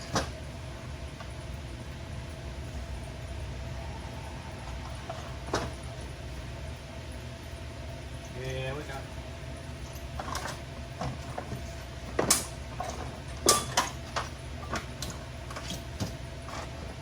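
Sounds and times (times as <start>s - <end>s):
low shop hum: 0.0s - 17.0s
metal tools knocking and clanking: 12.2s - 16.6s.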